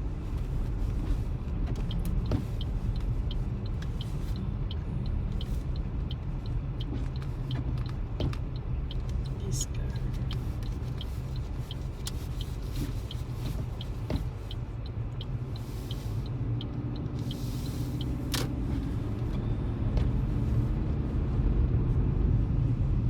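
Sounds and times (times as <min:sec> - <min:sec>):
road and engine rumble: 0:00.0 - 0:23.0
light regular ticking: 0:01.8 - 0:19.4.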